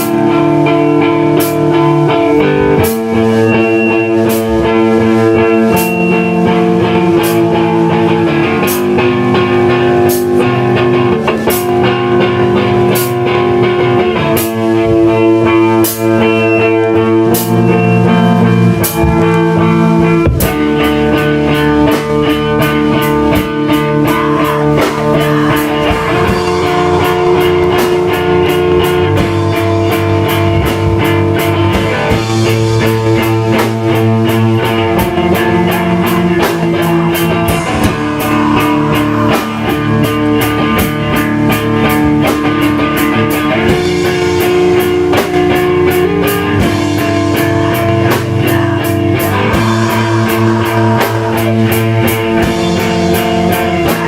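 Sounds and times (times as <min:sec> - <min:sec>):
bass guitar: 0:00.0 - 0:54.0
distorted electric guitars: 0:00.0 - 0:54.0
drum kit beat: 0:00.0 - 0:54.0.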